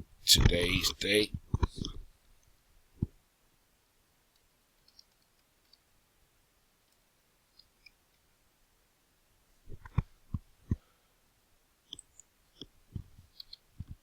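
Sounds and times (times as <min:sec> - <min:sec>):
computer mouse clicks: 0:04.3 - 0:05.8, 0:11.9 - 0:12.7, 0:13.3 - 0:14.0.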